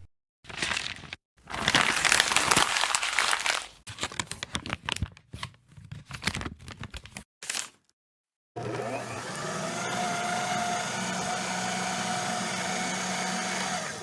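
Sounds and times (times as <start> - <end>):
crumpling and crinkling: 0.5 - 7.9.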